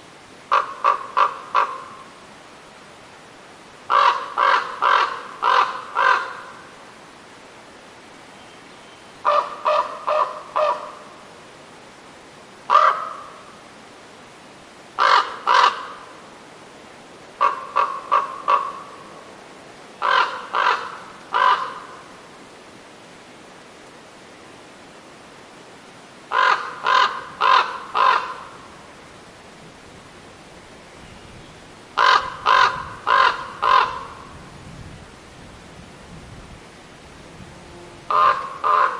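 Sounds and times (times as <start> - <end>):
crow cawing: 0.5 - 2.0, 3.9 - 6.5, 9.2 - 11.0, 12.7 - 13.4, 15.0 - 16.0, 17.4 - 19.0, 20.0 - 22.0, 26.3 - 28.5, 32.0 - 34.3, 38.1 - 38.9.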